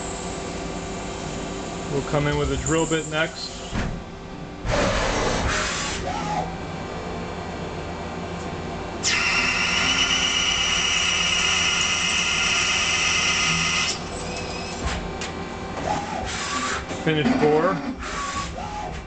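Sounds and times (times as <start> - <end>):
lathe running: 9.0 - 14.0.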